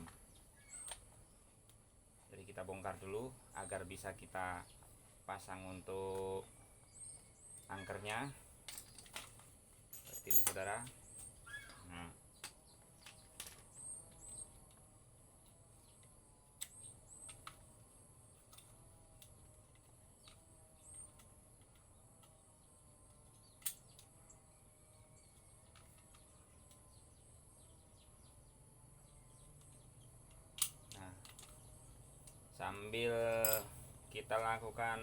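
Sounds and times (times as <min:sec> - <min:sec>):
faint bird chirps: 0:00.0 - 0:01.5, 0:06.0 - 0:09.0, 0:10.7 - 0:14.6
small metal parts clicking: 0:08.6 - 0:11.4, 0:16.6 - 0:24.4, 0:29.3 - 0:34.4.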